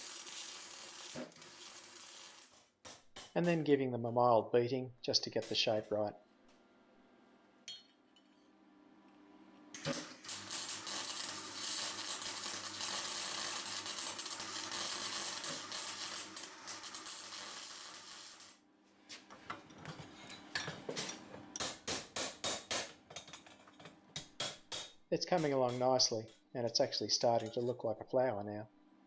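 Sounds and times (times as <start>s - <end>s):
welding arc crackling: 0.0s - 3.3s, 9.8s - 18.6s.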